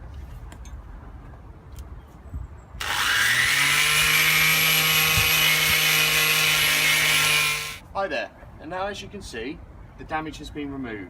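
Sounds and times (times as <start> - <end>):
power sander whining: 2.8 - 7.8.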